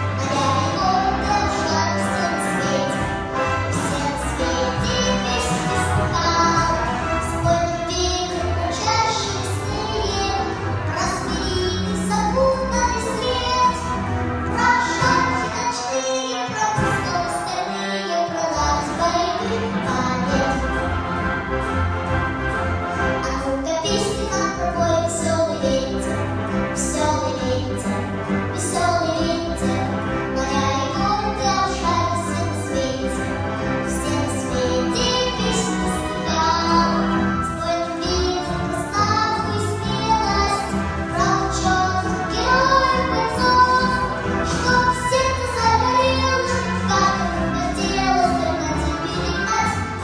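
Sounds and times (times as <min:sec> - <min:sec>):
instrumental accompaniment with beat: 0:00.0 - 0:50.0
person singing: 0:00.1 - 0:13.8.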